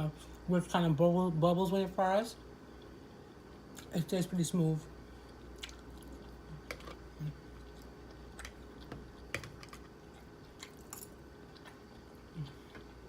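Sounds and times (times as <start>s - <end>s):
chewing crispy food: 5.2s - 12.9s.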